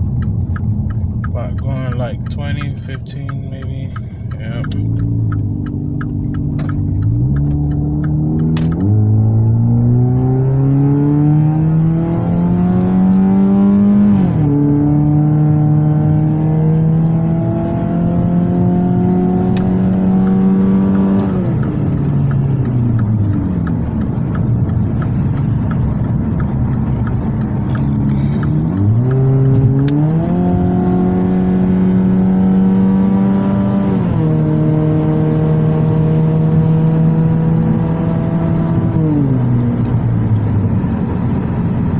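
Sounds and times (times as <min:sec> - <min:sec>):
regular ticking: 0:00.0 - 0:10.2, 0:19.5 - 0:30.4
car engine accelerating: 0:00.0 - 0:41.9.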